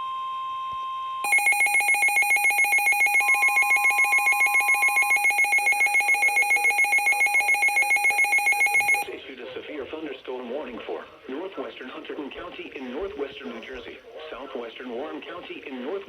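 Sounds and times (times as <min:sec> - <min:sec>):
fast electronic beeping: 0:01.2 - 0:09.1
steady warning alarm tone: 0:01.2 - 0:09.1.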